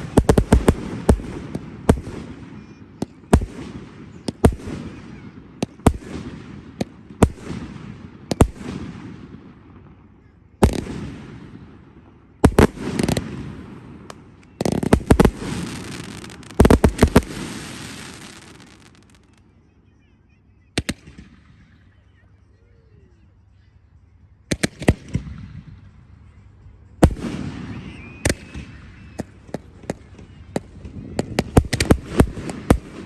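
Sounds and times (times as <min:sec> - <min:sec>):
fireworks crackling hiss: 0:12.5 - 0:19.4.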